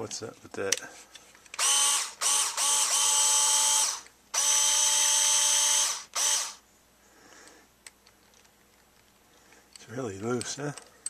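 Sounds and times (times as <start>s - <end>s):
cordless screwdriver whirring: 1.6s - 6.6s.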